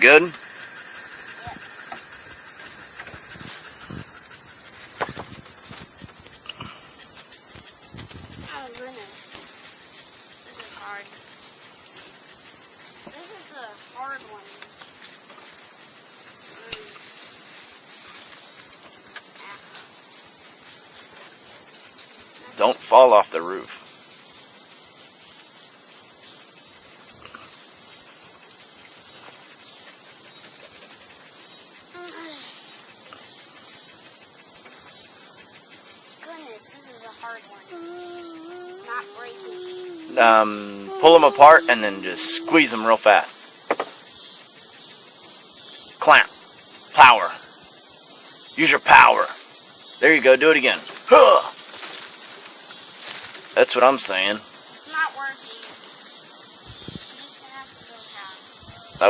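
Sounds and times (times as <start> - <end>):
high-pitched outdoor hiss: 0.0 - 59.0
insects droning: 0.0 - 59.0
faint short sounds: 37.6 - 43.3.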